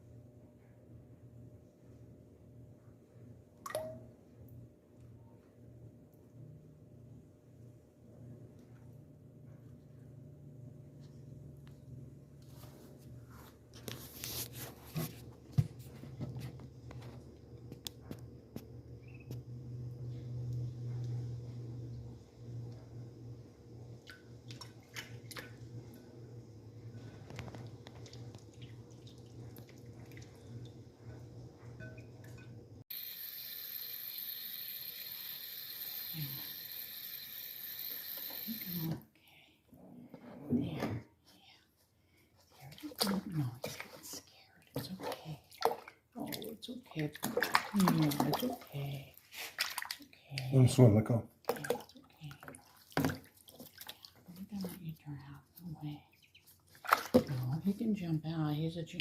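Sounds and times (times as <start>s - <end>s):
low steady hum: 0.0s - 49.4s
tap water filling a basin: 32.9s - 38.9s, 51.5s - 54.2s.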